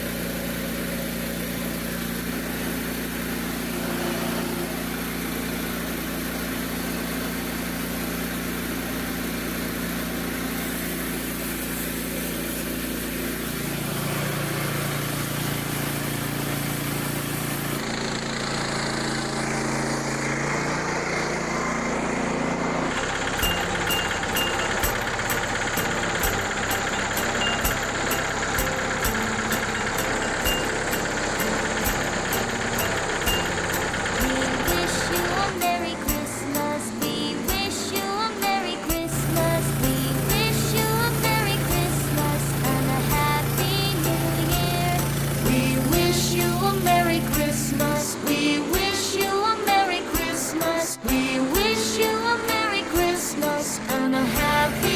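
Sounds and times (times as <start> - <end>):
small gasoline engine running: 0.0 - 54.9
fast regular ticking: 23.1 - 48.9.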